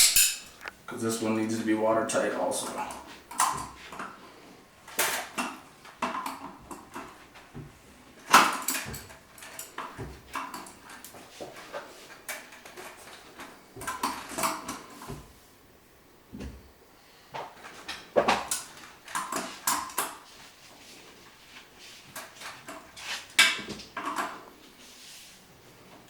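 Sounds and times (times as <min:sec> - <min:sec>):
wrench clanking on metal fittings: 0:00.0 - 0:00.7.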